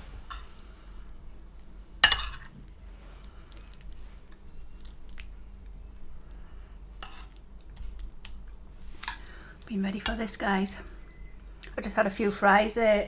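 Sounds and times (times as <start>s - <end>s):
person chewing food: 2.5s - 9.4s.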